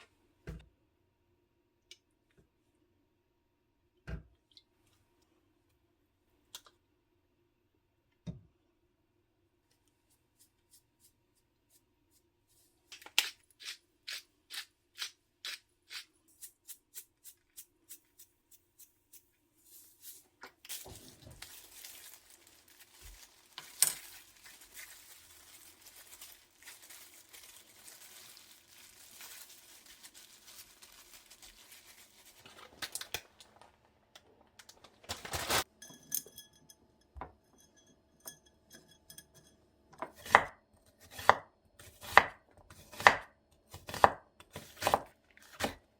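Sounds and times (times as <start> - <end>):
soft rustling of packaging: 17.9 - 35.7.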